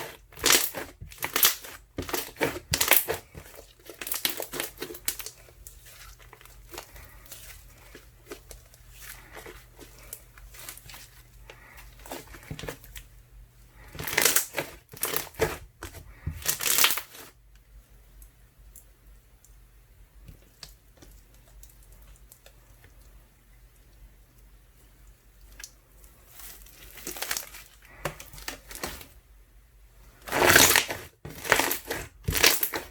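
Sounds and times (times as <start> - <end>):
slime crackling and popping: 0.0 - 11.1, 13.9 - 15.6, 30.2 - 32.9.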